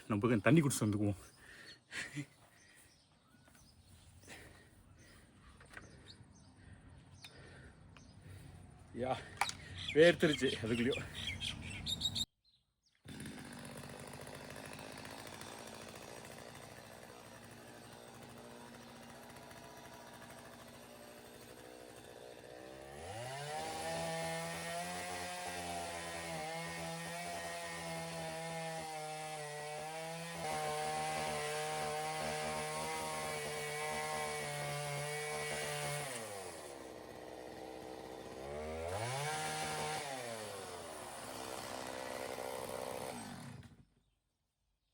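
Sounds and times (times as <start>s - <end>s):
chainsaw idling and revving: 0.3s - 2.8s, 4.2s - 6.0s, 13.0s - 44.1s.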